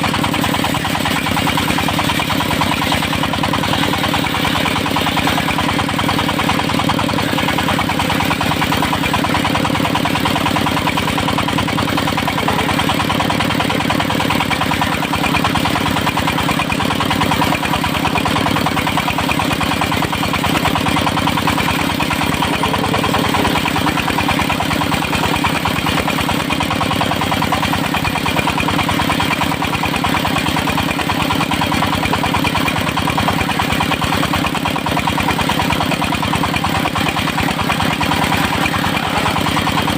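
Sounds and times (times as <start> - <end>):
sawmill engine running: 0.0 - 39.9.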